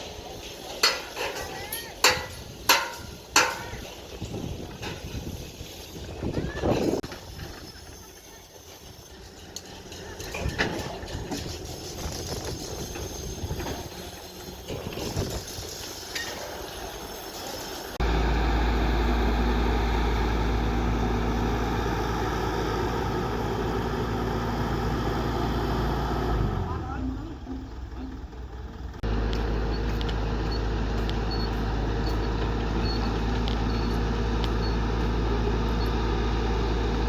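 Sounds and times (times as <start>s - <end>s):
excavator engine running loudly: 18.0s - 26.9s, 27.6s - 37.0s.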